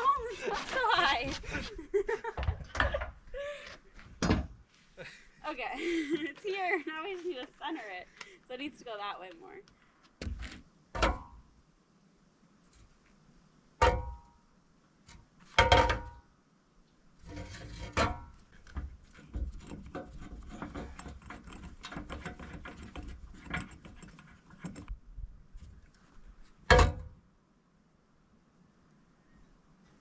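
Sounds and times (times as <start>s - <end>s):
metal frame scraping on wood: 17.2s - 24.9s.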